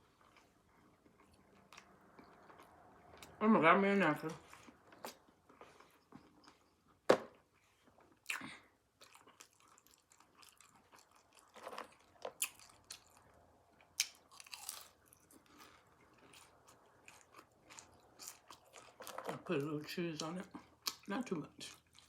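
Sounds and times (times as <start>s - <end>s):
chewing and lip smacking: 0.0s - 3.4s, 9.0s - 19.4s, 20.2s - 22.0s.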